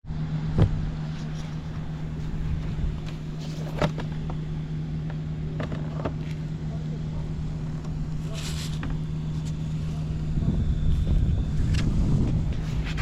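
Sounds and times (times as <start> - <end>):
scooter engine idling: 0.9 - 13.0.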